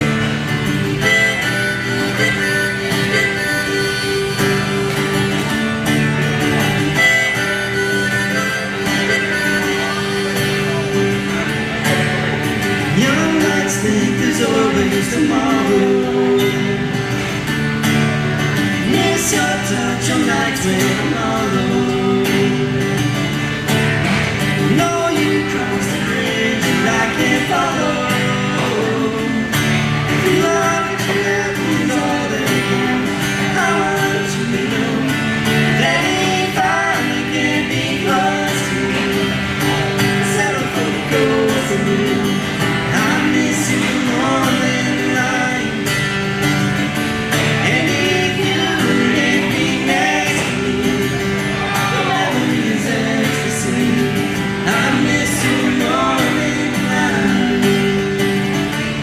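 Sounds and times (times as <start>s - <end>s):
live band playing: 0.0s - 59.0s
person singing: 12.8s - 17.4s, 18.5s - 23.3s, 24.5s - 46.7s, 47.4s - 58.2s.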